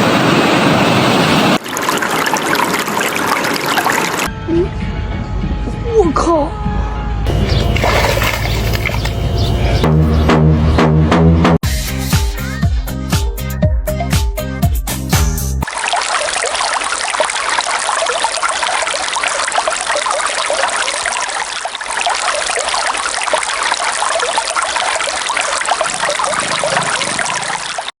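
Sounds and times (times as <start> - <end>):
stream water babbling: 1.6 - 4.3, 7.3 - 9.9, 15.6 - 27.9.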